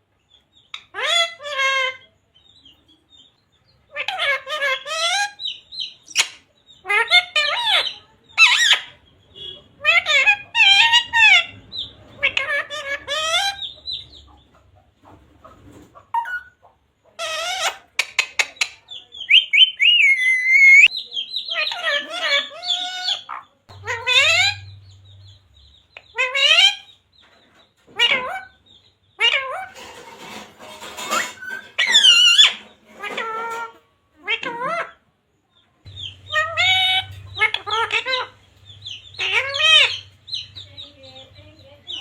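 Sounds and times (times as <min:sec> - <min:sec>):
parrot squawking and whistling: 0:16.1 - 0:16.6, 0:19.3 - 0:20.9, 0:31.0 - 0:33.6, 0:36.0 - 0:38.4.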